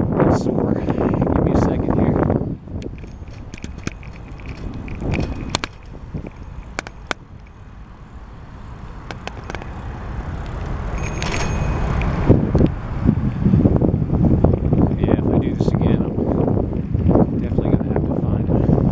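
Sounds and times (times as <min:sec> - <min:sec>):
wind on microphone: 0:00.0 - 0:18.9
bicycle clicks and rattles: 0:00.8 - 0:12.7.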